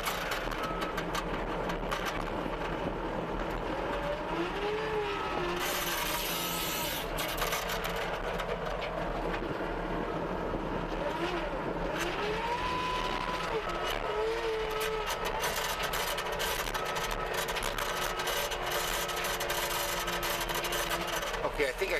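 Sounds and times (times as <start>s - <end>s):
diesel engine running: 0.0s - 21.9s
hydraulic whine: 4.9s - 7.7s.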